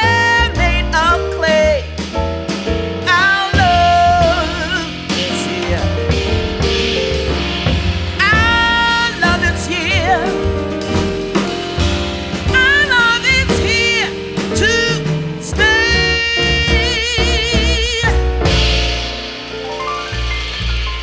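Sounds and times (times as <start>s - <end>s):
jazz band with bass and drums: 0.0s - 21.0s
person singing with vibrato: 3.1s - 6.1s, 8.2s - 10.5s, 12.5s - 18.3s.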